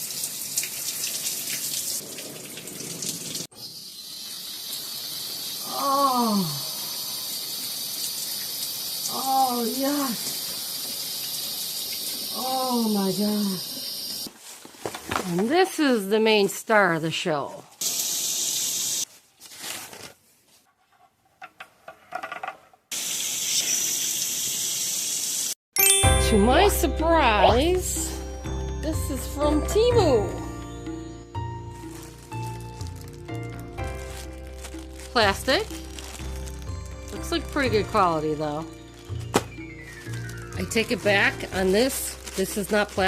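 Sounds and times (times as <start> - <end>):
water spraying from shower head: 4.0 - 14.3, 17.8 - 19.1, 22.9 - 25.6
packaging rustling: 14.3 - 15.4, 19.1 - 20.7, 31.6 - 38.0, 38.7 - 43.0.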